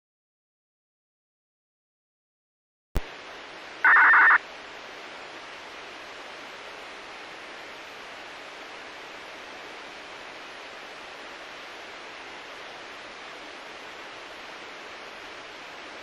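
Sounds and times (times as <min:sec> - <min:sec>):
radio carrier hiss: 0:03.0 - 0:04.7
radio click: 0:03.9 - 0:04.4.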